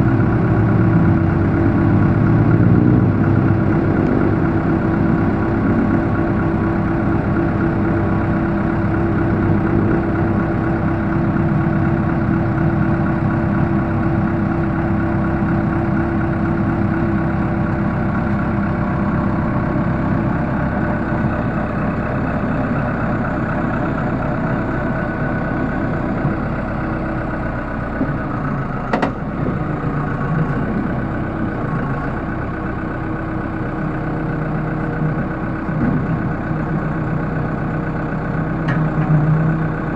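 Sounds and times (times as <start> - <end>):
diesel engine idling: 0.0 - 39.9.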